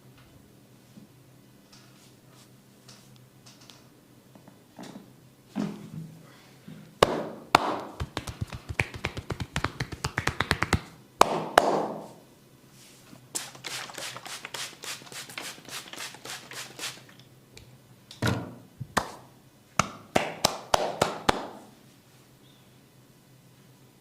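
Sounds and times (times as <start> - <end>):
loud slaps on skin: 7.0 - 12.0, 19.8 - 21.6.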